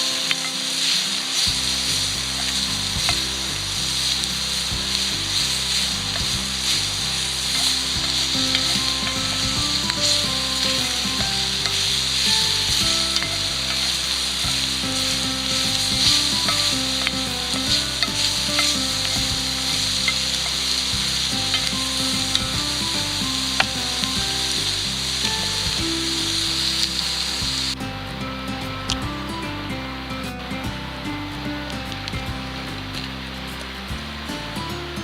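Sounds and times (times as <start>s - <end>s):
food sizzling in a pan: 0.0s - 27.8s
sharp crackles and clicks: 0.0s - 29.1s, 30.2s - 34.5s
soft background music: 0.0s - 35.0s.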